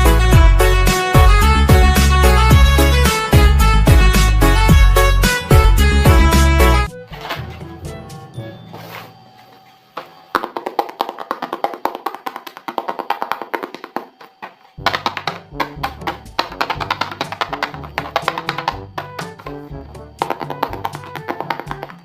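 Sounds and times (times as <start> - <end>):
bass line: 0.0 - 6.9, 14.8 - 21.8.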